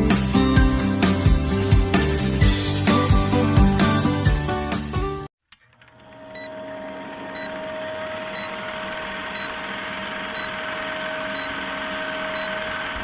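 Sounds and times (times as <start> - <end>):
electrical hum: 5.6 - 13.0
short high beeps: 10.2 - 12.8.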